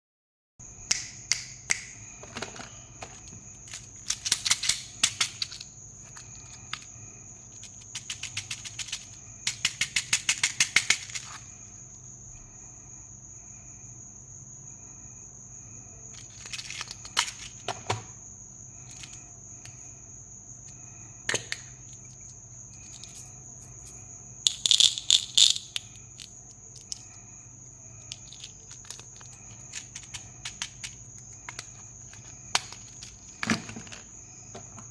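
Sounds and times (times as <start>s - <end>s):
plastic toys clicking and rattling: 2.2s - 11.5s, 16.1s - 18.0s, 18.8s - 19.8s, 24.5s - 27.2s, 28.0s - 34.9s.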